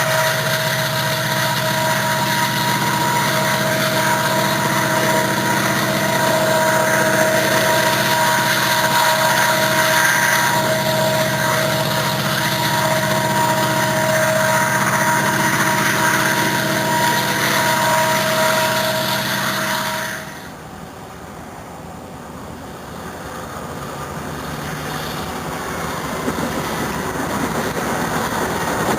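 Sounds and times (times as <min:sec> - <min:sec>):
whining tones: 0:00.0 - 0:21.2
train running past: 0:00.0 - 0:28.9.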